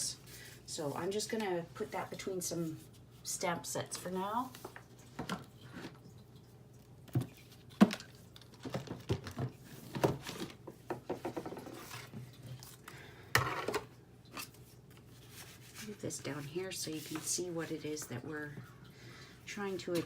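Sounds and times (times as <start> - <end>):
paper rustling: 14.4 - 16.1
rustling scrape: 15.1 - 17.7.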